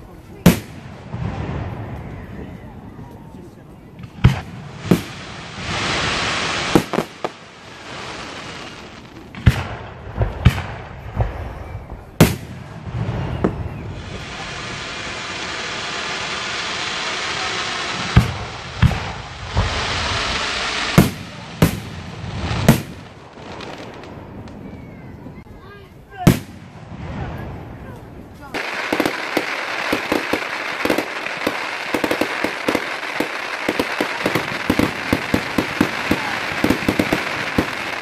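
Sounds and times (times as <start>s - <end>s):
fireworks bursting with bangs: 0.0s - 38.0s
long hiss: 4.6s - 9.2s, 13.8s - 24.6s.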